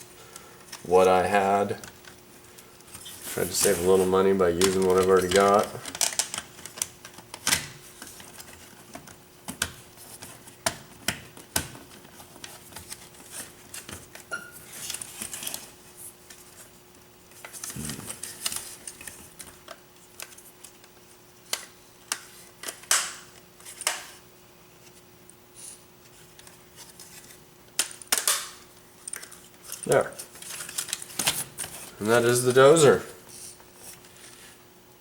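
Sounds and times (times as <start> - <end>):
scraping rustles: 2.9 - 5.9
plastic parts clicking and knocking: 4.6 - 13.0.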